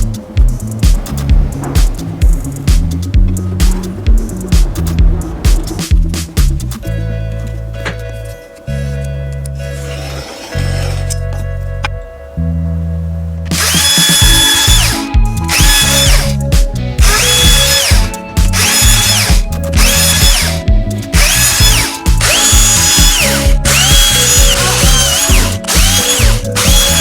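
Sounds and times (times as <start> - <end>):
power drill motor whine: 13.5 - 16.4, 17.0 - 20.6, 21.2 - 27.0.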